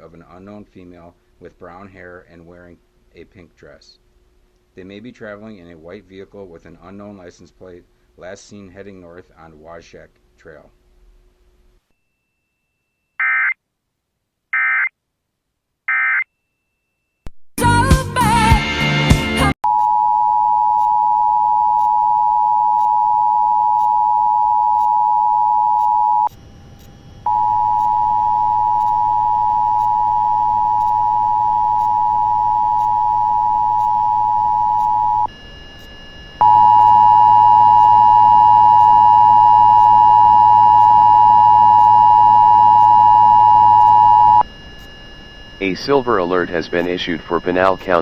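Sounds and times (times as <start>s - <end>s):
two-note alarm tone: 25.6s - 48.0s.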